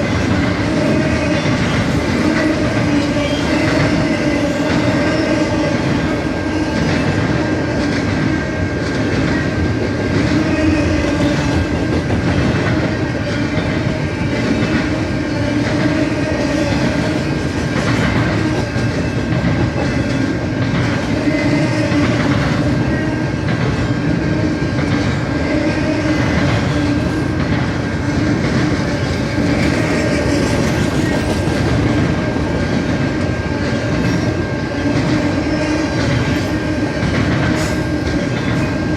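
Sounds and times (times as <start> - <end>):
freight train rumbling past: 0.0 - 38.9
wheels clattering on rails: 0.0 - 38.9.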